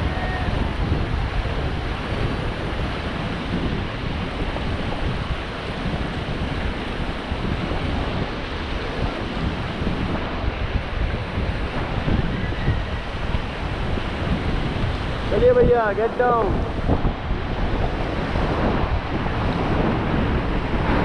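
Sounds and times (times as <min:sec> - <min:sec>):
rushing river water: 0:00.0 - 0:21.0
wind buffeting microphone: 0:00.0 - 0:21.0.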